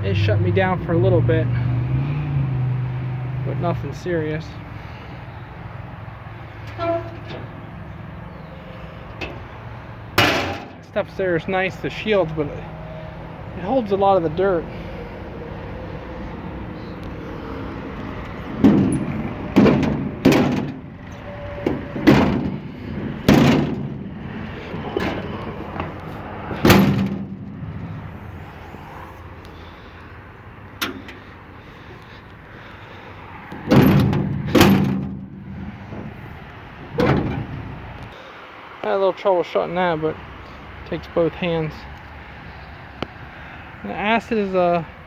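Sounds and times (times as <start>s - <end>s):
metal shields clanking shut: 6.7s - 7.7s, 9.1s - 9.5s, 10.2s - 10.9s, 18.4s - 28.2s, 33.5s - 38.1s.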